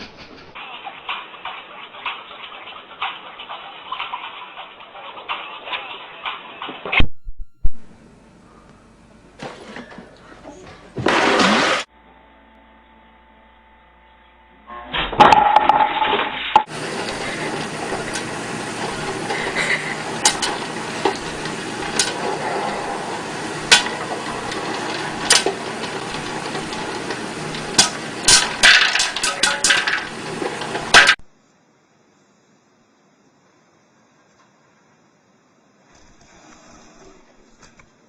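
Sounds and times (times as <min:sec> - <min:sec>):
hard objects clinking: 0:23.7 - 0:31.2.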